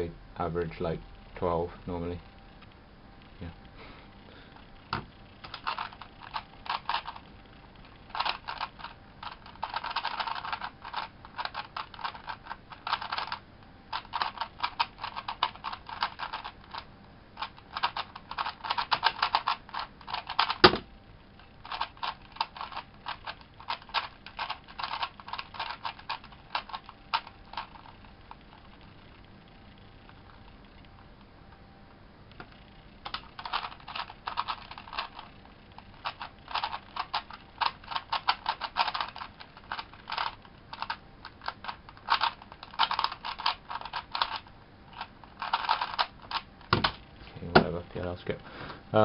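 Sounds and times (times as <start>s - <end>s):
plastic puzzle cube clicking: 5.3s - 7.3s, 7.9s - 16.8s, 17.4s - 20.8s, 21.6s - 29.2s, 32.4s - 44.4s, 45.0s - 47.0s.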